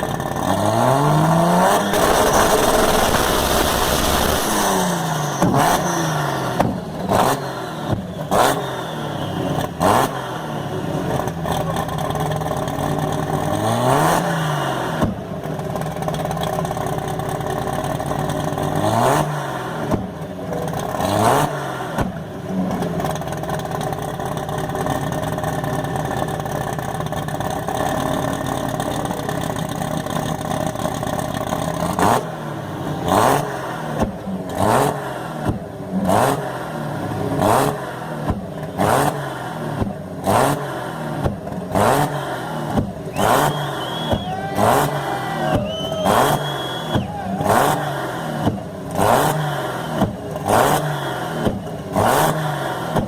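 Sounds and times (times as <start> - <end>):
car engine revving: 0.0 - 53.0
sharp exhaust cracks: 1.8 - 5.6.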